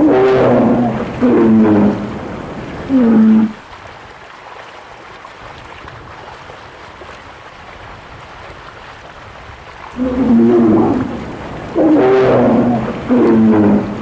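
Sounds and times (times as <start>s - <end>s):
bear roaring: 0.0s - 3.6s, 10.0s - 14.0s
water sloshing and splashing: 0.0s - 14.0s.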